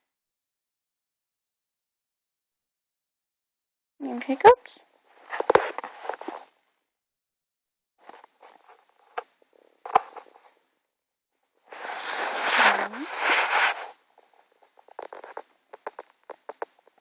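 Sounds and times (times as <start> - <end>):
loud rustling against microphone: 11.7 - 17.0.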